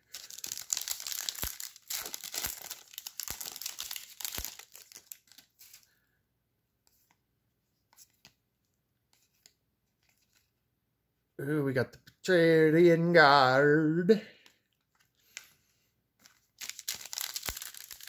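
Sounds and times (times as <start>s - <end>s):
plastic foil wrapper tearing: 0.0s - 5.8s, 16.3s - 18.0s.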